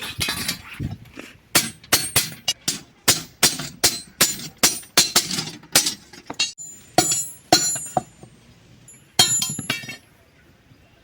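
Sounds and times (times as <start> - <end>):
hammer striking metal: 1.6 - 8.2, 9.2 - 10.0.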